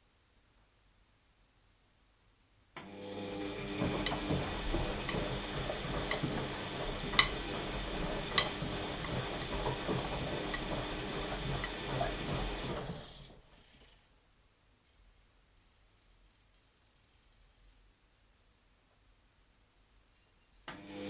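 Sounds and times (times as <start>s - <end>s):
sharp washing machine click: 2.8s - 13.2s
washing machine drum turning: 3.0s - 13.4s.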